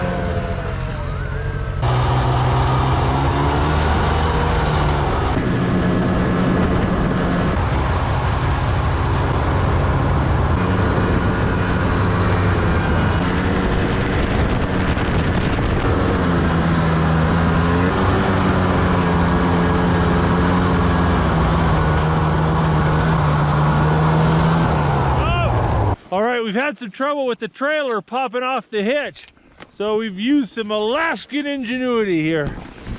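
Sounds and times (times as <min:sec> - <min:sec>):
snowmobile engine running: 0:00.0 - 0:26.0.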